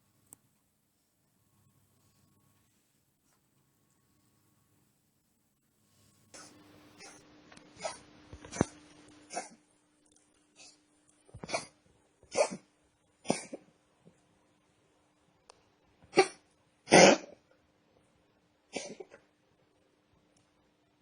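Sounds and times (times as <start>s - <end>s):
cat coughing: 6.4s - 7.2s, 7.8s - 8.7s, 9.3s - 9.6s, 11.4s - 13.7s, 16.1s - 17.4s, 18.7s - 19.3s.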